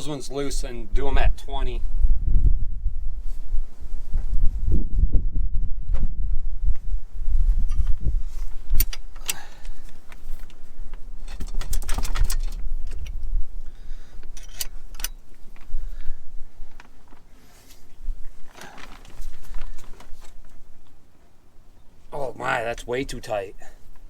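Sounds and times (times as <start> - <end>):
metal tools clinking: 11.2 - 13.2, 14.2 - 15.6.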